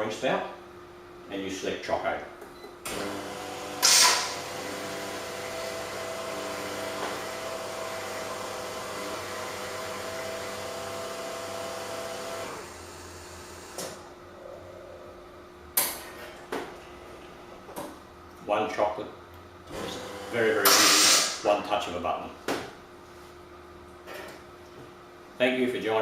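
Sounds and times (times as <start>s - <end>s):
machine hum: 2.4s - 21.7s
coffee machine motor whirring: 2.9s - 14.6s, 19.7s - 21.4s.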